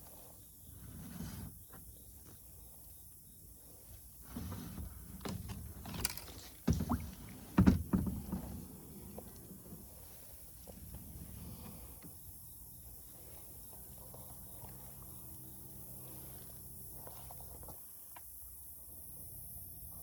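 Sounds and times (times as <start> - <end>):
paddle strokes splashing water: 6.6 - 12.0.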